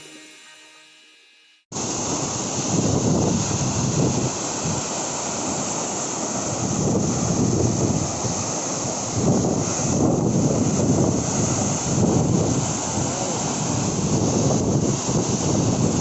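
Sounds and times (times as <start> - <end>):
waterfall rushing: 1.8 - 16.0
wind buffeting microphone: 2.3 - 4.9, 6.5 - 16.0.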